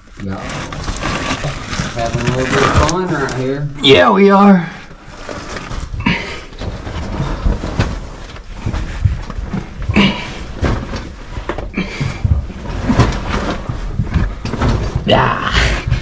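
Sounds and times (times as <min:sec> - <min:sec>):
body scraping on rock: 0:00.0 - 0:04.1, 0:04.7 - 0:16.0.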